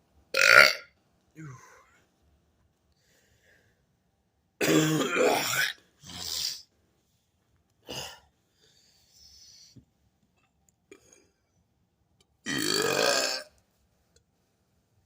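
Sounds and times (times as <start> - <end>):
burps: 0.4 - 0.9, 4.6 - 6.7, 12.4 - 13.5.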